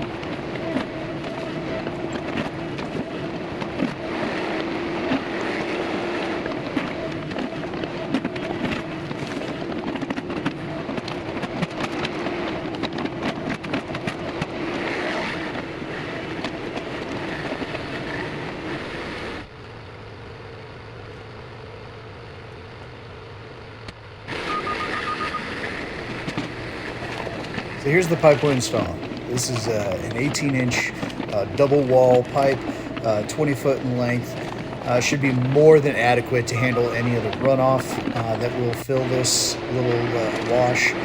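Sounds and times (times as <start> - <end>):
tractor engine running: 26.0 - 41.0.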